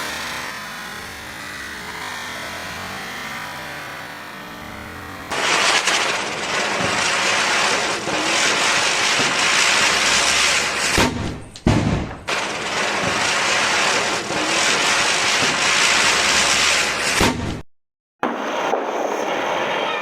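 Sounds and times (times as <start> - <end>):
sharp crack: 5.3 - 17.6, 18.2 - 20.0
ground firecracker hissing: 12.3 - 17.2, 18.2 - 20.0.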